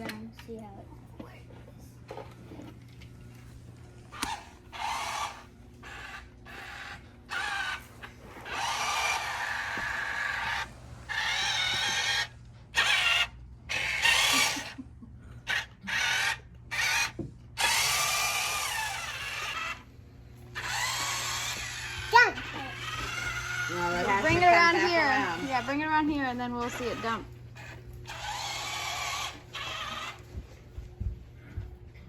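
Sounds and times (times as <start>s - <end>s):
toy truck electric motors whining: 4.1s - 14.8s, 15.4s - 30.3s.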